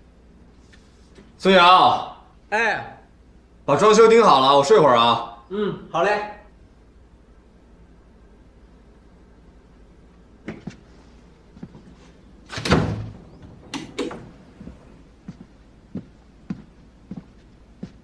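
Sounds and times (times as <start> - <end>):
door shutting with a thud: 12.5 - 14.9.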